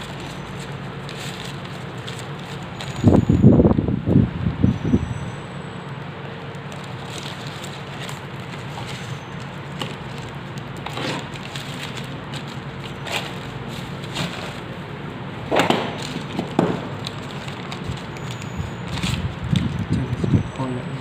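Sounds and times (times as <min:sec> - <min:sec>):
packaging crinkling: 0:00.0 - 0:03.0, 0:06.2 - 0:14.7, 0:15.8 - 0:19.9
low background hum: 0:00.0 - 0:21.0.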